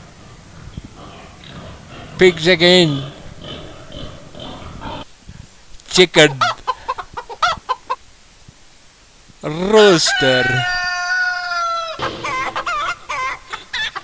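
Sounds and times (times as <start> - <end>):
chicken clucking: 0.0 - 5.1, 6.1 - 8.1, 9.4 - 14.0
rooster crowing: 9.6 - 14.0.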